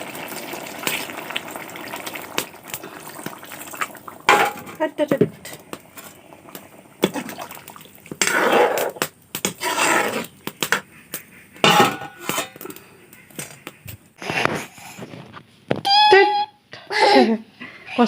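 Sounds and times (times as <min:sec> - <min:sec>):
water splashing and hissing in pan: 0:00.0 - 0:04.8
utensil scraping a pot: 0:08.1 - 0:12.8.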